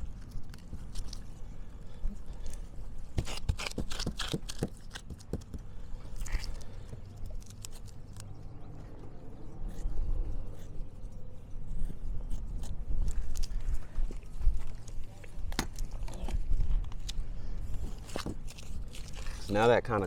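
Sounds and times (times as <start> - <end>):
steady low rumble: 5.7 - 20.0.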